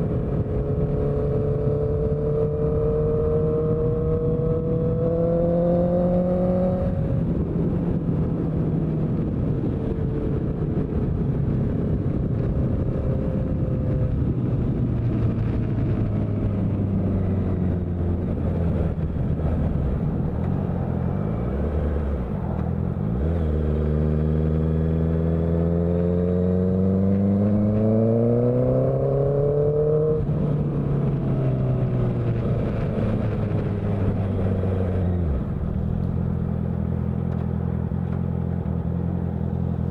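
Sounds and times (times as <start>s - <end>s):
motorcycle engine revving: 15.3s - 39.9s.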